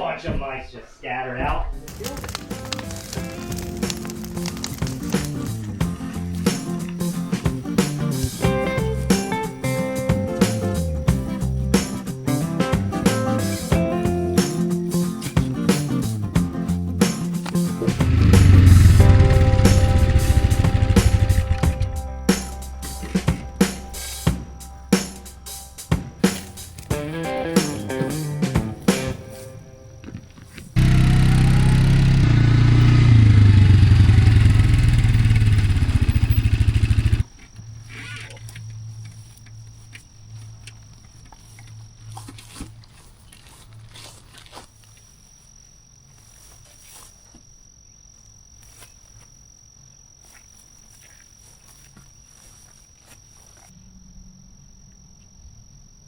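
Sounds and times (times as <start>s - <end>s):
motor engine revving: 17.9s - 22.3s, 30.8s - 37.3s.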